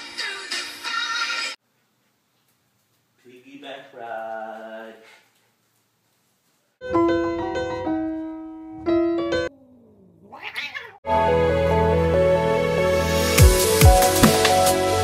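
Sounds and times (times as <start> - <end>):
music: 0.0 - 1.6, 6.8 - 9.5, 11.0 - 15.0
cat meowing: 9.6 - 11.0.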